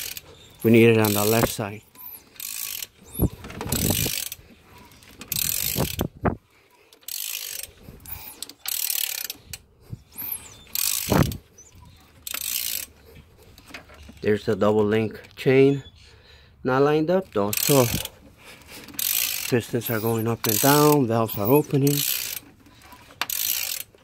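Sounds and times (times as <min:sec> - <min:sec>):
ratchet wrench clicking: 0:00.0 - 0:04.4, 0:05.0 - 0:06.1, 0:06.9 - 0:11.4, 0:12.2 - 0:12.9, 0:17.3 - 0:18.2, 0:18.8 - 0:24.0.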